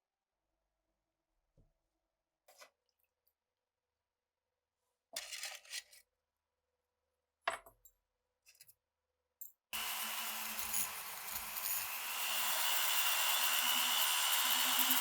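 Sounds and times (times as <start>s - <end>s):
metal parts clinking and scraping: 9.8s - 12.1s
power tool running: 9.8s - 15.0s.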